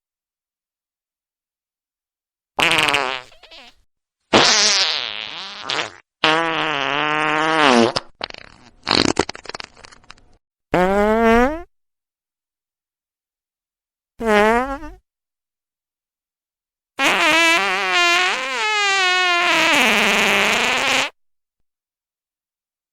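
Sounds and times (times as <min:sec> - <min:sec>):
fart sounds: 0:02.6 - 0:11.7, 0:14.2 - 0:15.0, 0:17.0 - 0:21.2.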